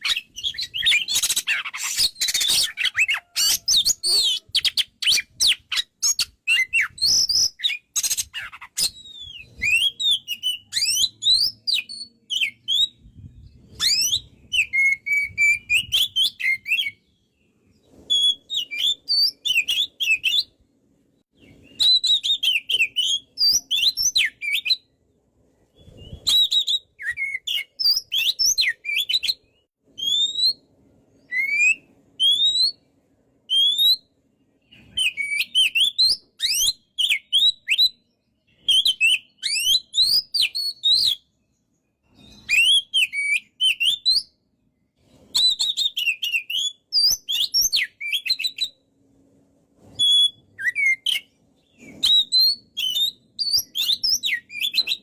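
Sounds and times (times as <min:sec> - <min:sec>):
songbird singing trills: 0:00.0 - 0:20.6, 0:21.3 - 0:25.0, 0:49.9 - 0:55.0.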